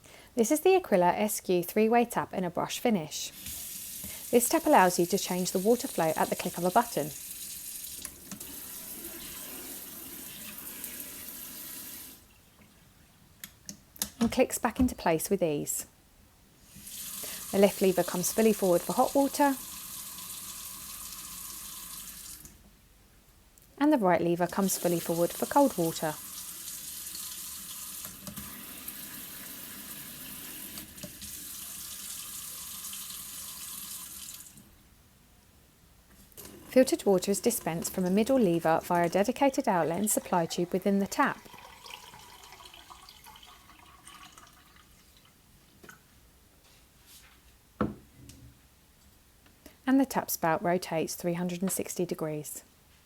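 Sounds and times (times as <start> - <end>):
tap water running into sink: 3.4 - 12.2, 24.5 - 34.6, 39.8 - 45.2.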